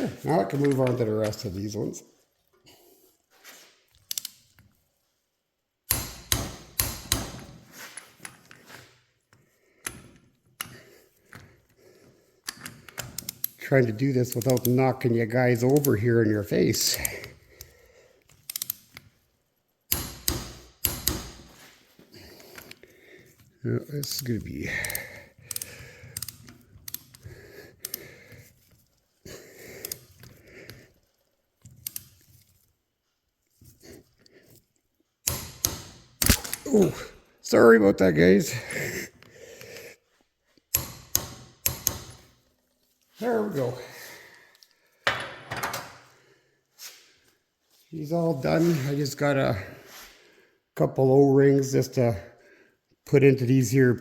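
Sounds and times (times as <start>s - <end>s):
sharp tool clicks: 5.9s - 7.4s, 14.3s - 14.8s, 18.4s - 19.0s, 19.9s - 21.5s, 24.8s - 27.2s, 35.2s - 36.7s, 40.7s - 42.3s
man breathing hard and straining: 8.6s - 13.1s, 16.8s - 18.3s, 21.6s - 23.6s, 24.5s - 31.2s, 38.5s - 40.3s.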